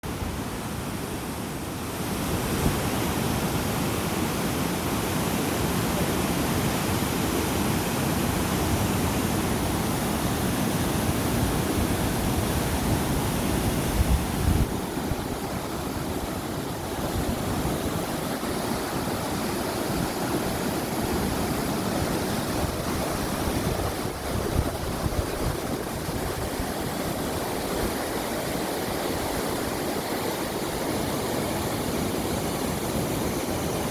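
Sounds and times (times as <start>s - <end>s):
stream water rushing: 0.1s - 33.9s.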